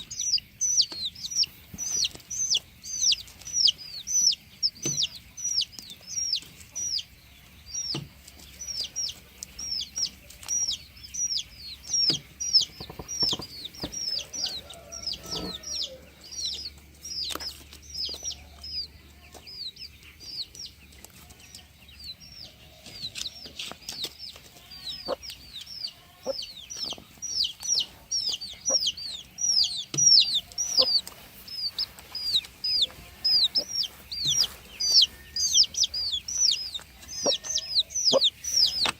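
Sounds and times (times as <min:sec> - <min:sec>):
chicks peeping: 0:00.0 - 0:38.9
faint knocks: 0:12.1 - 0:14.1.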